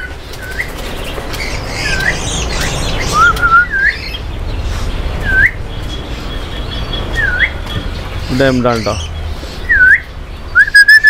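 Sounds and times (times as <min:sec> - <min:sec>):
bird whistle dipping and rising: 0:03.1 - 0:04.1, 0:09.6 - 0:11.0.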